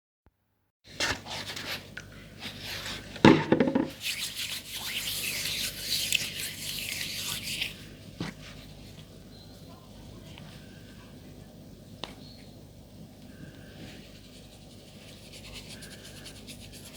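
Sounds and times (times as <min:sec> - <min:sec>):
chalk being crushed and rubbed: 0:03.9 - 0:07.9, 0:14.0 - 0:16.9.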